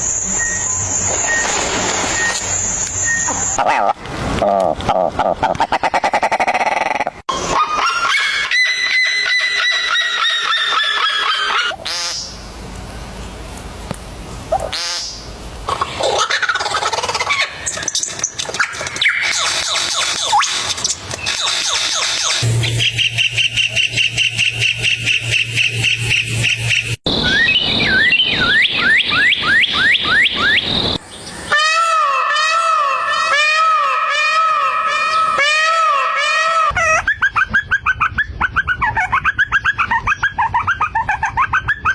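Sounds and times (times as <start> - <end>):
high repeated animal calls: 5.0 - 12.3, 14.5 - 27.0, 31.5 - 41.9
pulsing bird chirp: 17.6 - 31.5
quick rising whistled bird notes: 22.0 - 31.0.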